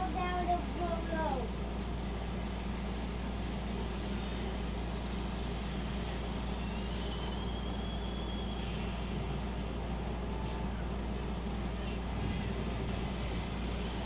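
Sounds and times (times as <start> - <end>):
low background rumble: 0.0 - 14.0
faint high whistle: 6.0 - 9.4.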